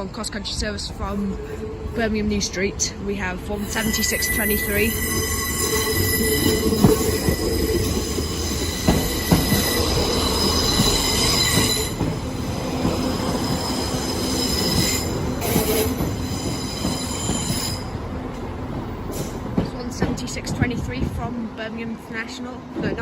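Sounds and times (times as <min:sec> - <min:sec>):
low train rumble: 0:00.0 - 0:23.0
wheel and brake squeal: 0:03.9 - 0:12.0, 0:13.5 - 0:17.9
wheels knocking: 0:06.4 - 0:13.6.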